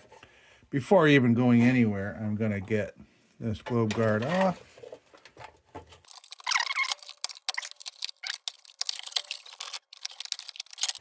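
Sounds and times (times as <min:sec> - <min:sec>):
metal wire clicks and scrapes: 0:06.0 - 0:11.0
wire squeaking: 0:06.0 - 0:11.0.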